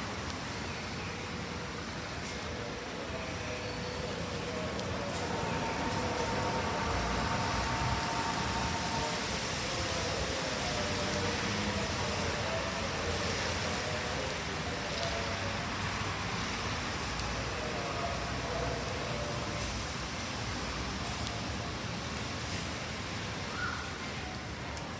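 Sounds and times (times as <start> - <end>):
road traffic noise: 0.0 - 24.9
faint tones from passing vehicles: 1.4 - 19.9.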